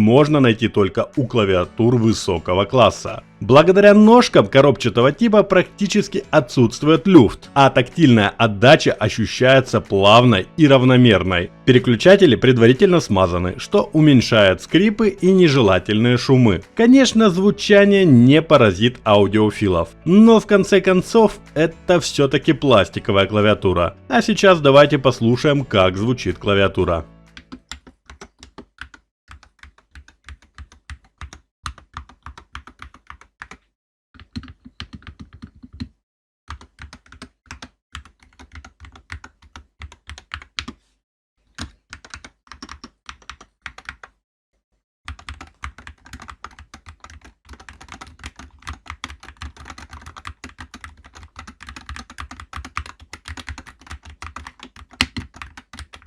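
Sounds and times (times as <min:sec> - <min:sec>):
plastic keyboard key clacks: 0:45.1 - 0:56.0.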